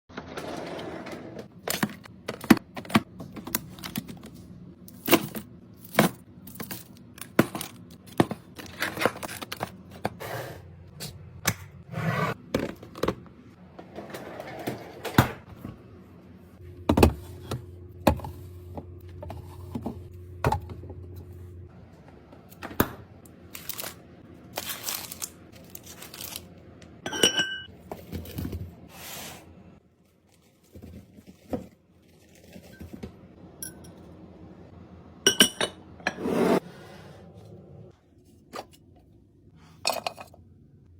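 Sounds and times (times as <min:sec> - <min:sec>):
wrappers crinkling and tearing: 0:23.5 - 0:26.5.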